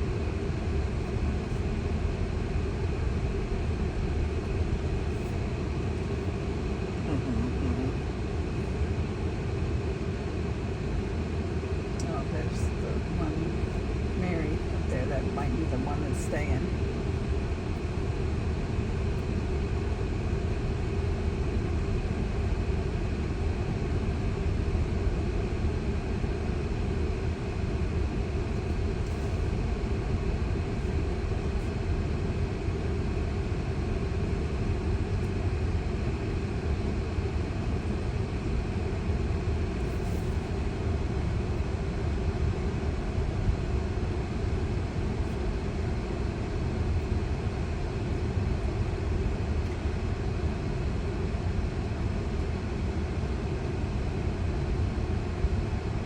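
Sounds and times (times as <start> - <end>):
car cabin rumble and hiss: 4.2 - 8.2, 12.0 - 16.8.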